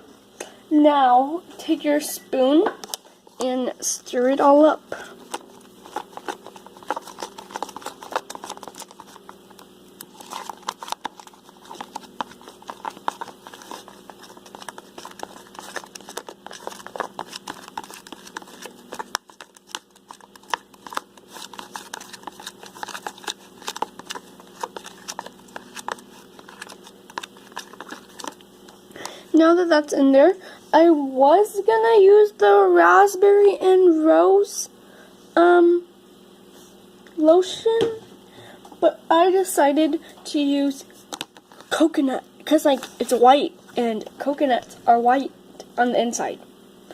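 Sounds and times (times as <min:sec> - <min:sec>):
wet squishing and crackling: 0:05.0 - 0:28.8.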